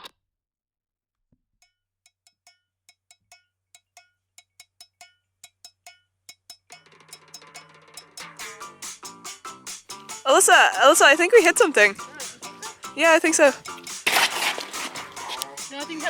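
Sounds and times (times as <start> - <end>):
pitched hand percussion strikes: 2.3 - 16.0
band playing: 8.2 - 16.0.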